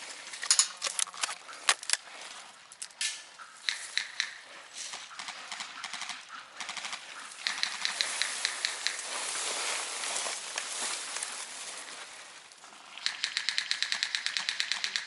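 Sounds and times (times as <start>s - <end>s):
airsoft guns rapid clicking: 3.6s - 9.0s, 13.0s - 15.0s
rustling hiss: 7.2s - 13.6s.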